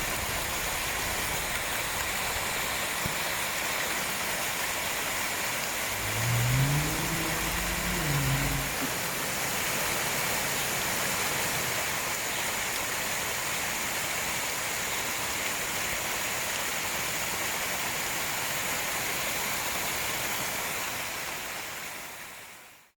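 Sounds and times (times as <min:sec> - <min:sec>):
stream water flowing: 0:00.0 - 0:18.6
rain: 0:00.0 - 0:23.0
vehicle engine revving: 0:05.7 - 0:09.7
low rumble: 0:05.9 - 0:09.2.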